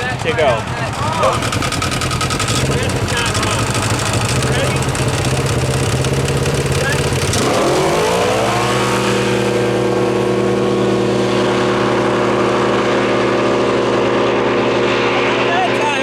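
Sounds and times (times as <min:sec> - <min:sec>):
engines at full throttle: 0:00.0 - 0:16.0.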